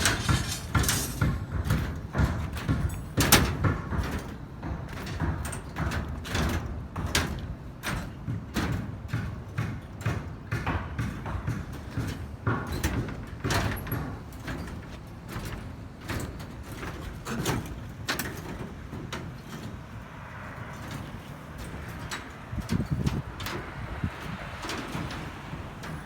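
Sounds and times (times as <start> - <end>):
irregular knocks and bangs: 0.0 - 6.1.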